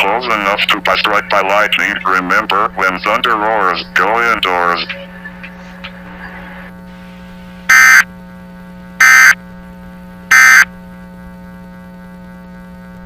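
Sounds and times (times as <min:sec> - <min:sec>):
steady low hum: 0:00.0 - 0:13.0
digital data tone bursts: 0:07.7 - 0:08.0, 0:09.0 - 0:09.4, 0:10.3 - 0:10.7.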